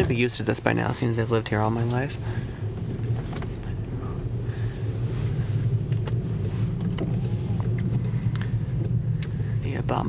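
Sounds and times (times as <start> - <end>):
car engine and tyre drone: 0.0 - 10.0.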